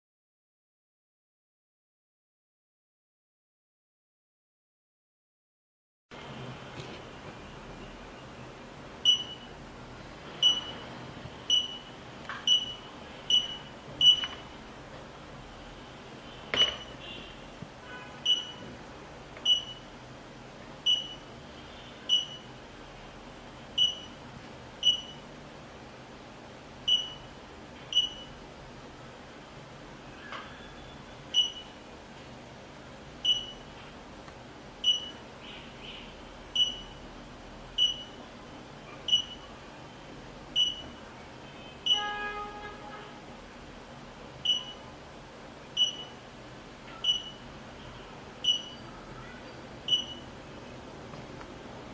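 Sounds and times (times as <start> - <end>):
high-pitched electronic beeps: 47.0 - 47.4, 48.4 - 48.8, 49.9 - 50.3.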